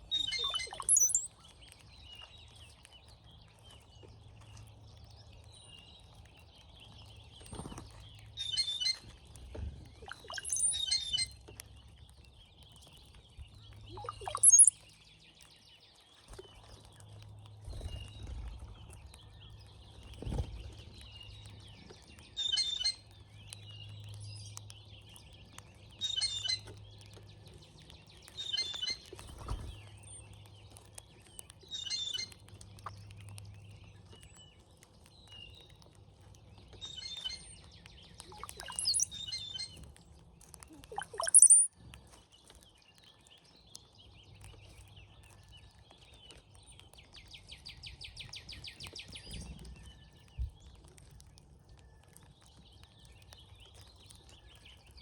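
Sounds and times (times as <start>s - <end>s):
cowbirds gurgling songs: 0.0s - 55.0s.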